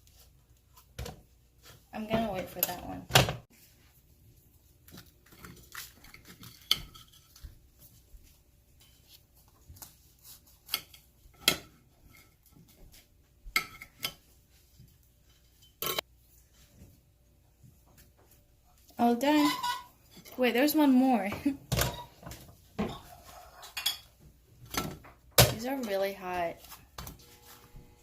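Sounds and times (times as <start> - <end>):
utensils and dishes clinking: 15.3 - 16.0, 19.3 - 20.4, 21.7 - 25.0.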